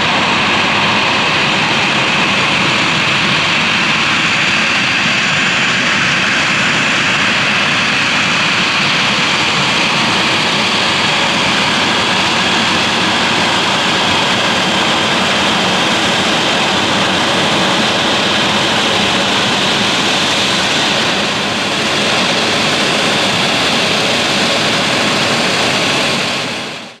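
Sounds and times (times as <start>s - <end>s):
jet engines running: 0.0s - 27.0s.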